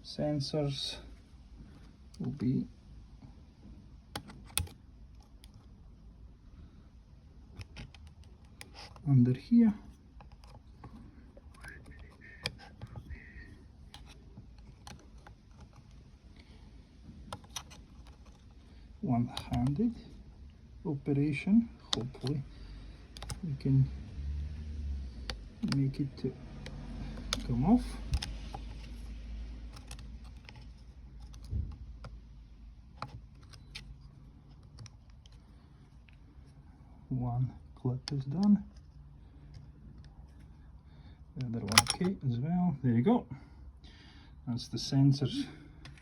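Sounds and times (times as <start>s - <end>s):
light clicks and taps: 21.8s - 23.5s
small clicks and taps of clips: 23.1s - 23.4s.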